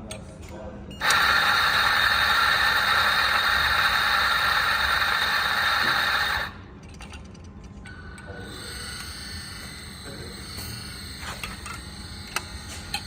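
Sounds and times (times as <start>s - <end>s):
electric coffee grinder whirring: 1.0s - 6.5s.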